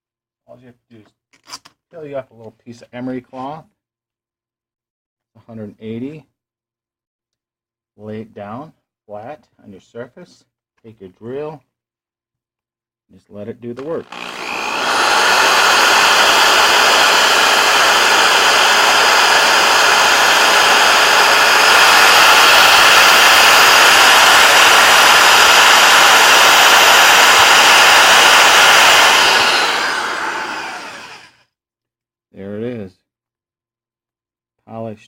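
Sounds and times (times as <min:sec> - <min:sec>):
power drill motor whine: 0:13.9 - 0:31.4.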